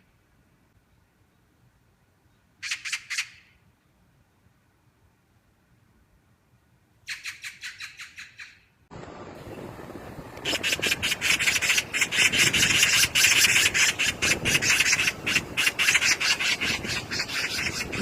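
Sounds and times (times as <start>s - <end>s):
magpie chattering: 2.6s - 3.4s, 7.1s - 8.6s, 10.5s - 18.0s.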